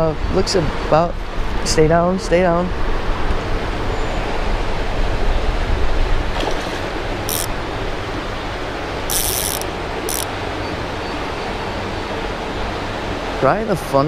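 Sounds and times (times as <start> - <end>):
creek water rushing: 5.8 - 13.4
fishing reel drag buzzing: 6.8 - 7.6, 9.1 - 10.4.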